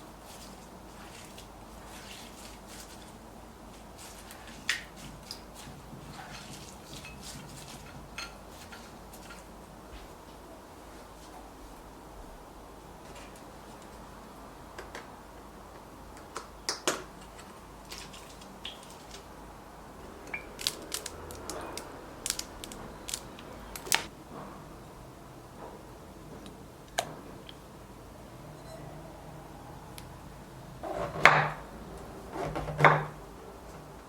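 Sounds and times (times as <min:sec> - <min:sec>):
utensils and dishes clicking: 0:06.3 - 0:09.5, 0:20.2 - 0:24.1.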